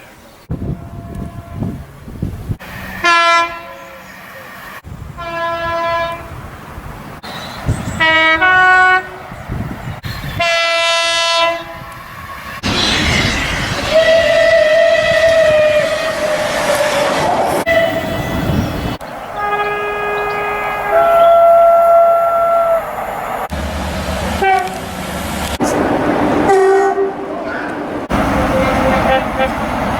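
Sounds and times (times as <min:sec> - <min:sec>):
moving train rumble: 0:00.4 - 0:29.9
locomotive horn blasts: 0:00.6 - 0:01.8, 0:02.9 - 0:04.5, 0:05.2 - 0:06.4, 0:08.0 - 0:09.3, 0:10.3 - 0:11.9, 0:13.9 - 0:16.9, 0:17.6 - 0:18.8, 0:19.4 - 0:22.9, 0:24.4 - 0:24.8, 0:26.5 - 0:27.4, 0:28.3 - 0:29.7.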